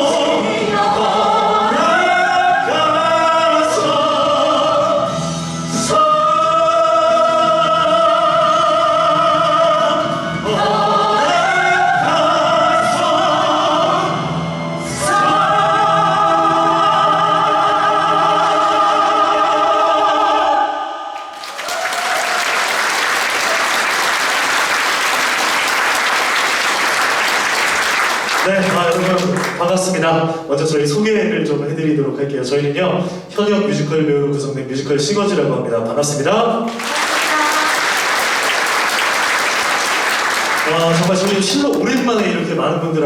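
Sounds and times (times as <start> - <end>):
music: 0.0 - 29.7
singers holding long notes: 0.0 - 29.8, 36.7 - 42.5
audience applause: 21.2 - 29.8, 36.7 - 42.4.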